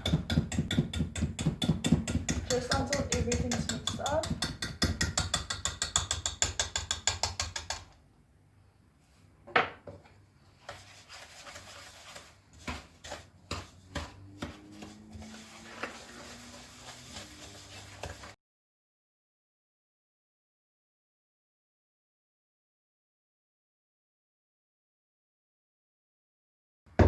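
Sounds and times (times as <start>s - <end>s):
wooden spoon beating in bowl: 0.0s - 7.9s, 10.7s - 18.4s.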